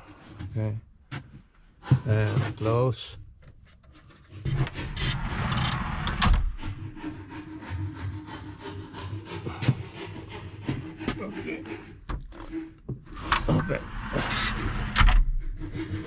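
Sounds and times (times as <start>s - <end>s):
wooden door sliding on track: 4.1s - 7.9s, 12.2s - 16.0s.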